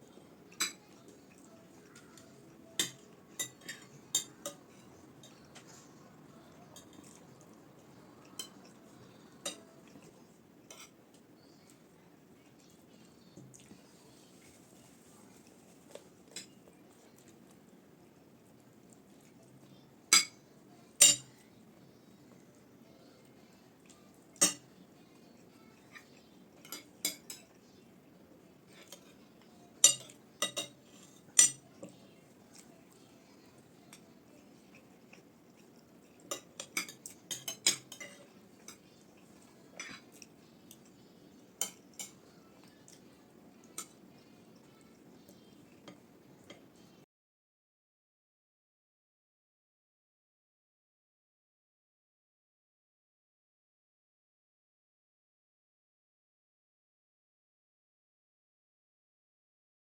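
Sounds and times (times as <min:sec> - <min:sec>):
faint room hum: 0:00.0 - 0:47.1
spoons and plates clinking: 0:00.5 - 0:06.0, 0:21.0 - 0:21.4, 0:24.4 - 0:24.8, 0:29.8 - 0:31.9, 0:36.2 - 0:40.9, 0:41.6 - 0:43.0.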